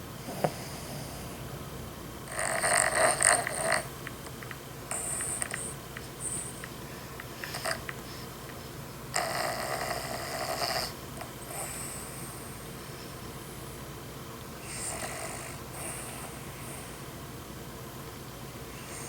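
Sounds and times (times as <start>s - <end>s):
rasping snoring: 2.3s - 3.9s, 9.1s - 12.1s, 14.6s - 16.4s.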